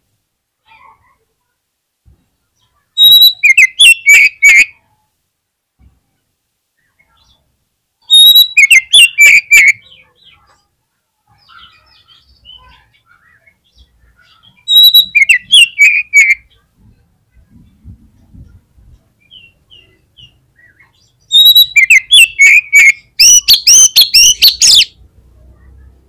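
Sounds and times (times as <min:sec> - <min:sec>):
songbird singing: 0:00.6 - 0:05.1, 0:05.8 - 0:26.0
soft bird twittering: 0:02.5 - 0:04.8, 0:06.8 - 0:10.7, 0:11.3 - 0:16.7, 0:19.2 - 0:25.0.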